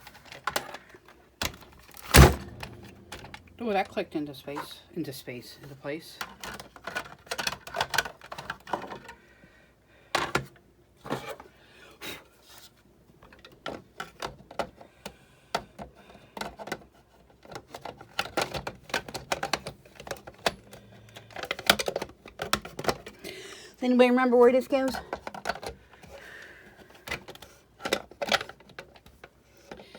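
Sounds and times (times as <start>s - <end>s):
plastic and metal parts clicking: 6.2s - 9.2s, 13.3s - 23.2s, 25.0s - 26.2s, 26.8s - 29.9s.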